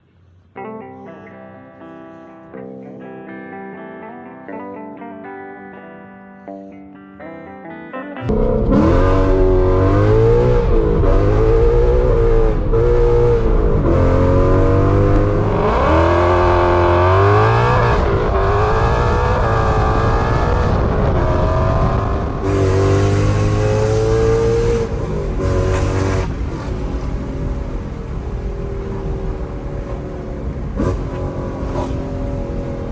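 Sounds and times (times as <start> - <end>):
car engine revving and accelerating: 8.3 - 32.9.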